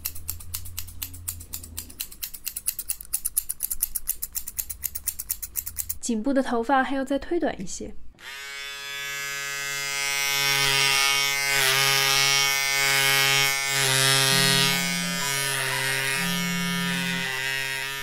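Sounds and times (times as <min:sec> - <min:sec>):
electric hair clippers buzzing: 0:08.2 - 0:18.0.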